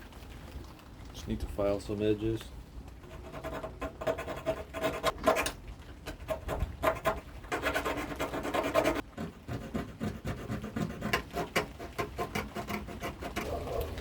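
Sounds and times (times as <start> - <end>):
file scraping metal: 3.1 - 5.5, 6.1 - 14.0.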